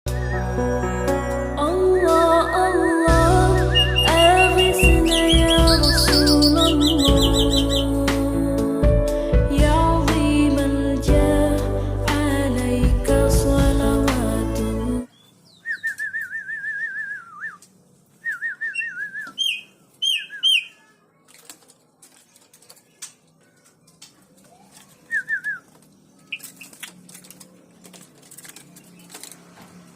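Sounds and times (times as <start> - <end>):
bird whistled notes: 1.9 - 7.9, 15.5 - 17.6, 18.2 - 20.8
songbird warbling trills: 1.9 - 8.0, 18.3 - 20.9.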